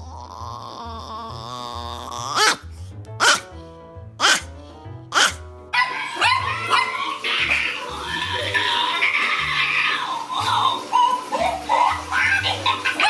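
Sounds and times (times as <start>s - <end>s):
dog barking: 2.2s - 3.5s, 4.2s - 4.5s, 5.1s - 7.1s.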